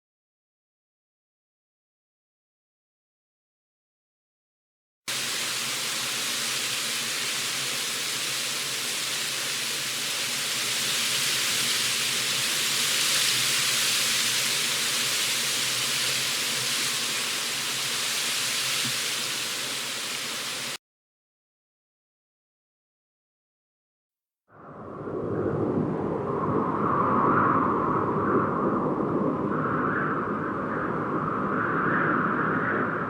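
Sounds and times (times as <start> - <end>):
steady rushing wind: 24.6 - 33.0.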